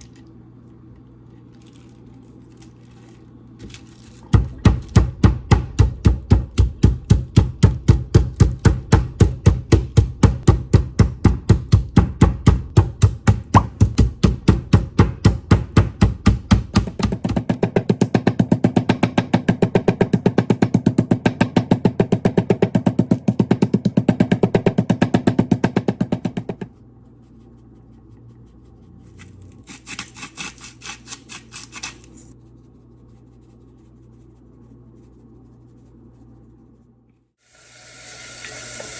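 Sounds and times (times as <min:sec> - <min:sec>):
knife chopping on cutting board: 0:04.4 - 0:26.7.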